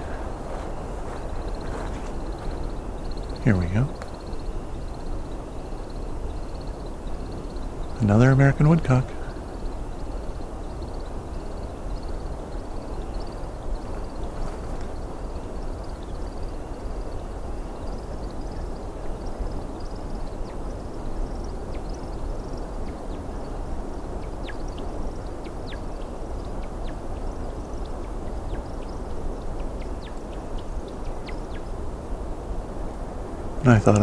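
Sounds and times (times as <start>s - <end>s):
steady low rumble: 0.0s - 4.2s
bird twittering: 0.0s - 5.0s.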